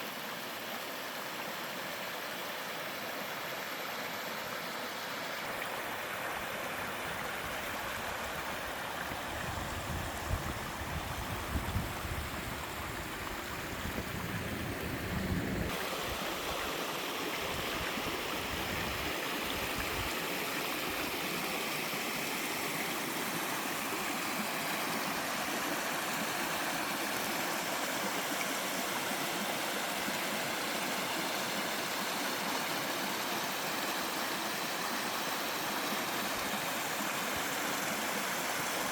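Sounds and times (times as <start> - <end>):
waterfall and stream splashing: 0.0 - 38.9
low rumble of water: 9.0 - 16.6.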